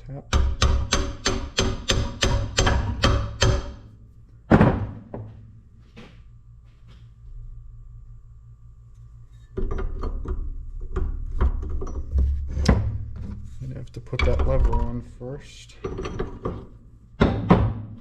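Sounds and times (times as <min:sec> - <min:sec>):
hammer tapping metal: 0:00.3 - 0:03.8.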